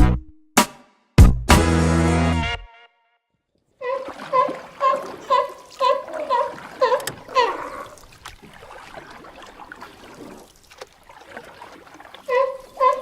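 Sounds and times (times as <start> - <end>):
water sloshing and trickling: 3.6 - 13.0.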